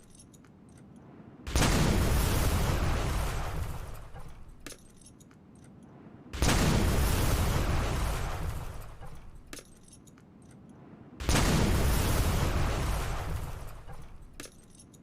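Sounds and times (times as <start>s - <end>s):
light metallic clinks: 0.0s - 1.3s, 3.8s - 6.2s, 8.6s - 11.0s, 13.5s - 15.0s.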